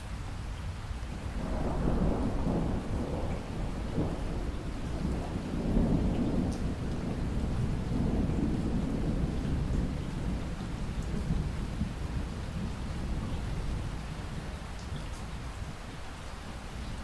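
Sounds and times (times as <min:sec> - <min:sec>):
steady rain: 0:00.0 - 0:17.0
rolling thunder: 0:01.2 - 0:14.6.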